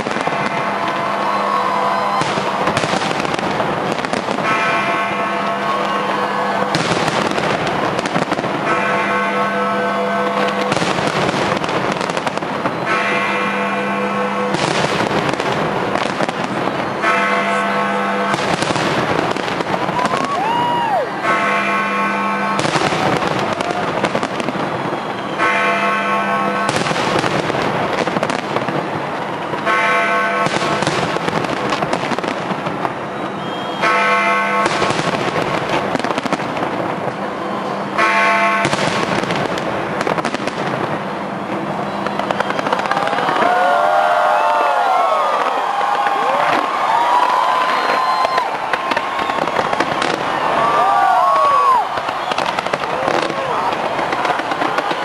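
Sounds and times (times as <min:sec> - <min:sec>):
fireworks bangs and crackling: 0:00.0 - 0:55.0
whistling firework: 0:00.0 - 0:55.0.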